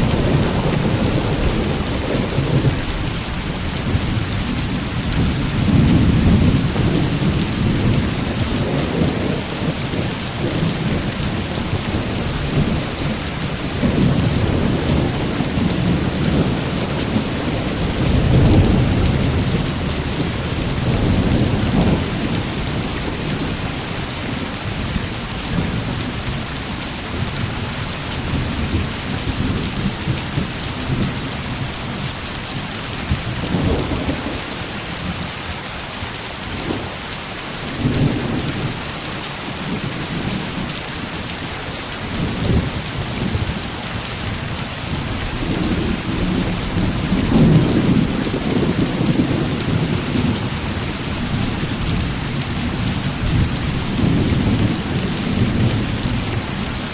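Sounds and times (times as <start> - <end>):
thunder rumbling: 0.0 - 26.2, 44.3 - 56.9
heavy rain: 0.0 - 56.9.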